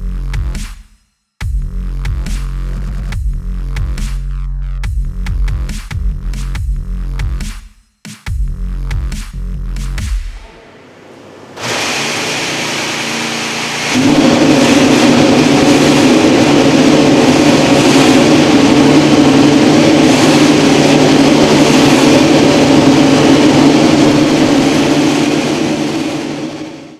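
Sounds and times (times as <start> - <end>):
racing car engine running: 10.2 - 26.9.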